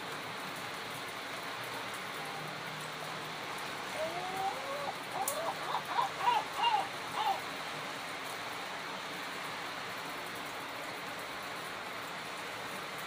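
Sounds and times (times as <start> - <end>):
rain-like hiss: 0.0 - 13.0
bird calling: 3.9 - 7.5.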